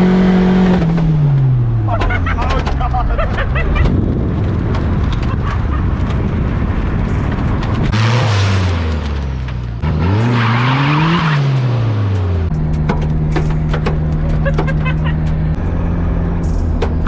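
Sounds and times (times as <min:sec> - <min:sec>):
tyres spinning and squealing: 0:01.6 - 0:06.4, 0:08.1 - 0:11.8
pickup engine revving hard: 0:07.9 - 0:12.4.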